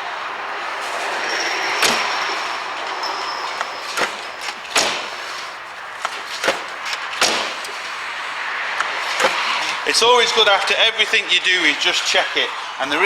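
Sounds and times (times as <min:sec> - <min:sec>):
car door mechanism clicking: 0:00.8 - 0:09.8.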